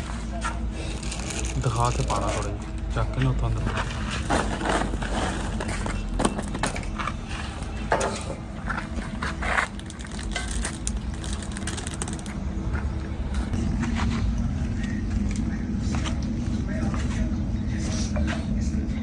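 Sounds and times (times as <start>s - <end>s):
machinery humming: 0.0s - 19.0s
clanks and knocks: 7.9s - 9.0s.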